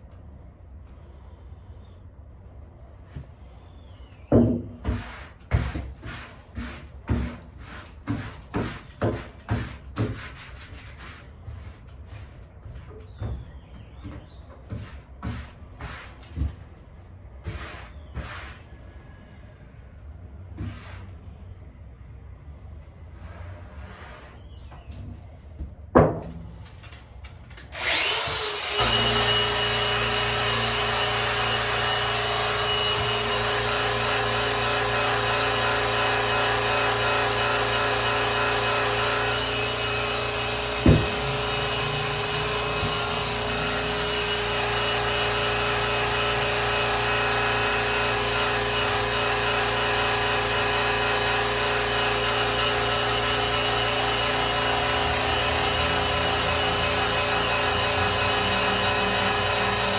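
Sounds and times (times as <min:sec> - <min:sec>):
electric polisher running: 0:27.7 - 0:59.9.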